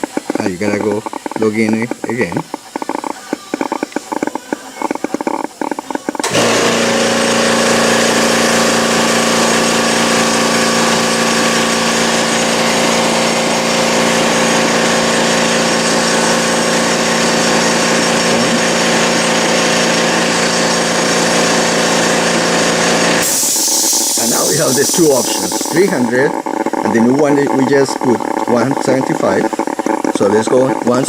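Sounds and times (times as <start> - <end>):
air tool mechanical whine: 0.0 - 31.0
rushing air hiss: 23.2 - 25.7.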